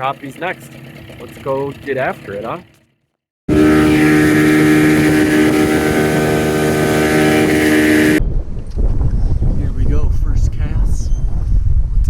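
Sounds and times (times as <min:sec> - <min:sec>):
small outboard motor running: 0:00.0 - 0:08.2.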